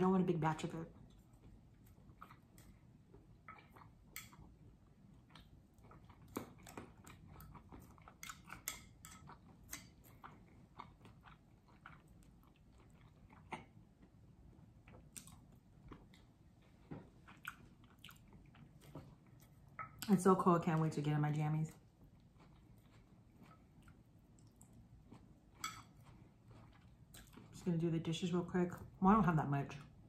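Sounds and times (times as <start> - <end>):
person chewing with mouth clicks: 1.1 - 14.2, 14.8 - 20.1, 22.2 - 27.6.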